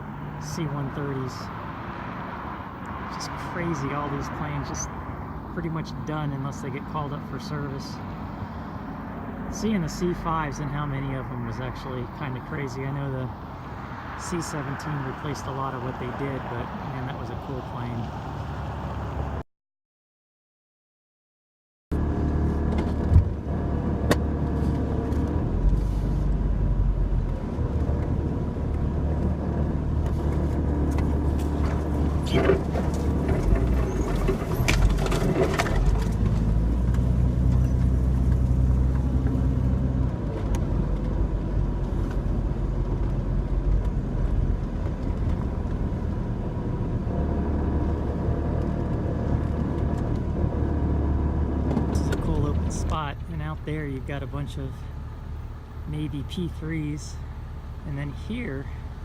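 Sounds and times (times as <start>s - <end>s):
engine and road rumble: 0.0s - 19.5s, 21.9s - 59.0s
rattles and knocks: 30.9s - 36.5s.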